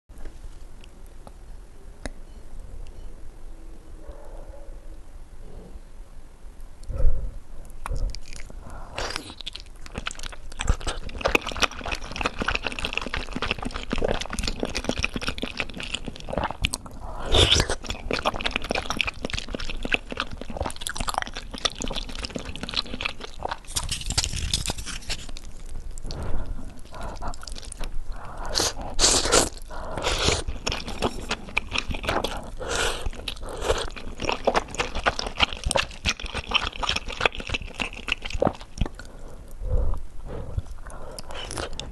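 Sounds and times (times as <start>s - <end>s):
chewing and crunching: 7.7s - 41.9s.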